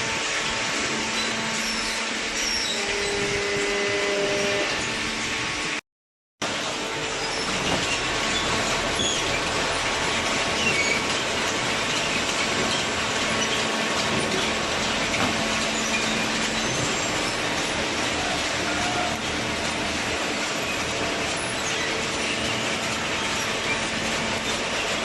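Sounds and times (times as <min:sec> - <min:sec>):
machinery noise: 0:00.0 - 0:05.8, 0:06.4 - 0:25.0
brief high squeaks: 0:01.1 - 0:04.9.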